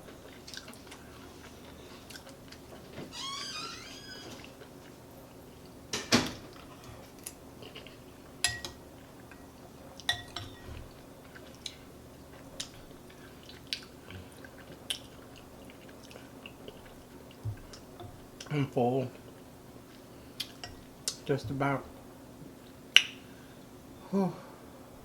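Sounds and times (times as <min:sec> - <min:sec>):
spoon clinking against bowl: 0:08.4 - 0:08.8, 0:10.1 - 0:10.6.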